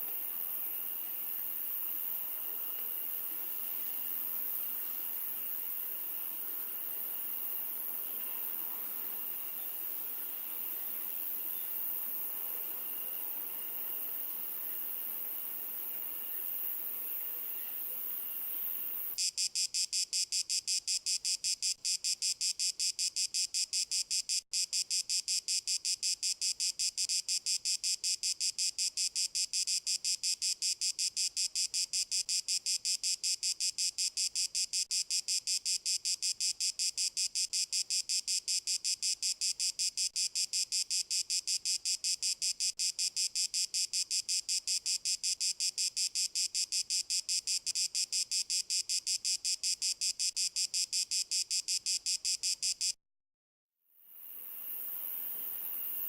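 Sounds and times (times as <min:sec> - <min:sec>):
crickets chirping: 0:00.0 - 0:53.0, 0:54.1 - 0:56.0.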